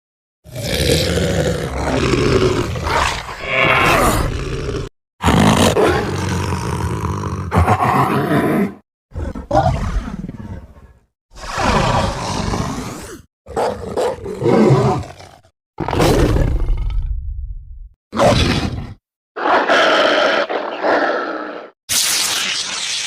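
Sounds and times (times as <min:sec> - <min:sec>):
dragon roar: 0:00.5 - 0:10.0, 0:11.4 - 0:13.2, 0:18.2 - 0:21.8.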